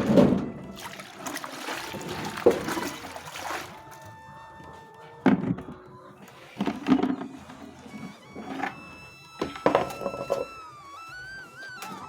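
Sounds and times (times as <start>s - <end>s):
liquid pouring into a container: 0.1s - 4.0s.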